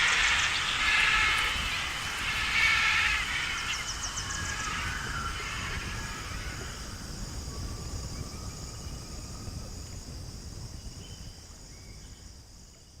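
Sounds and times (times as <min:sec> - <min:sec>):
insects buzzing: 0:00.0 - 0:13.0.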